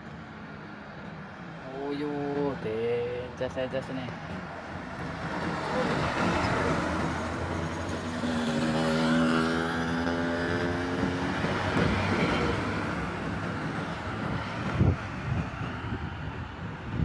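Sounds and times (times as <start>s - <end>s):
heavy truck passing: 4.2s - 17.0s.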